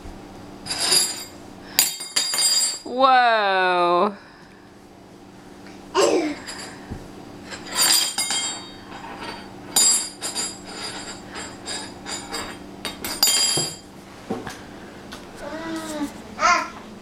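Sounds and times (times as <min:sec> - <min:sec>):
dishes and cutlery clattering: 0:00.7 - 0:02.9, 0:06.4 - 0:06.8, 0:07.4 - 0:13.9.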